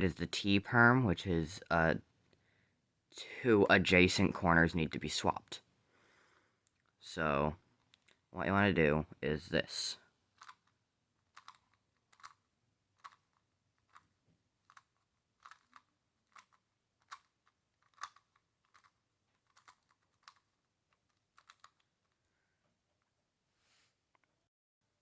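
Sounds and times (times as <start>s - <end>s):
puzzle cube clicking: 10.4s - 22.2s.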